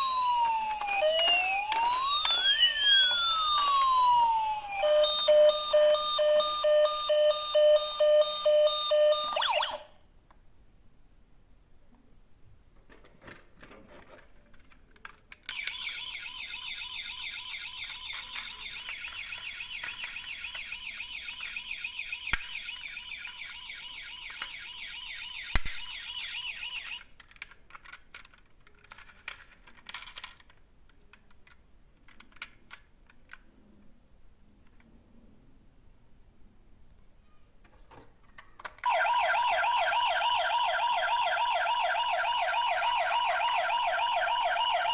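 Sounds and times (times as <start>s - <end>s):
toy electronic siren: 0.0s - 10.0s, 15.5s - 27.1s, 38.8s - 44.9s.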